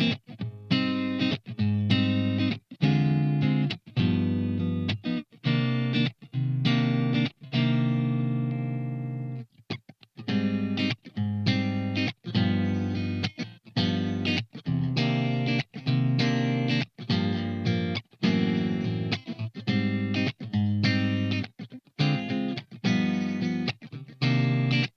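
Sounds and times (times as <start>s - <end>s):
electric guitar chords: 0.0s - 9.4s, 10.2s - 24.9s
muted guitar chords: 0.0s - 24.9s.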